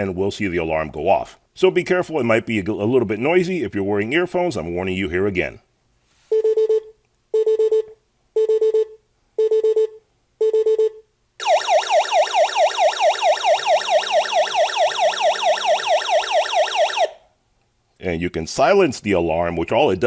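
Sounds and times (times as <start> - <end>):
warbling alarm siren: 11.4 - 17.2.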